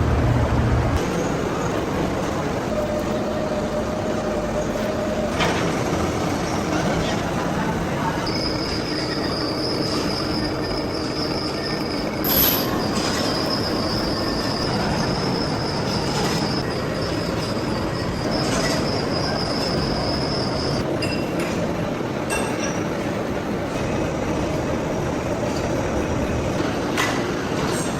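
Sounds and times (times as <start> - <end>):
high-pitched squeal: 8.2 - 20.8
sharp screech: 8.2 - 20.8.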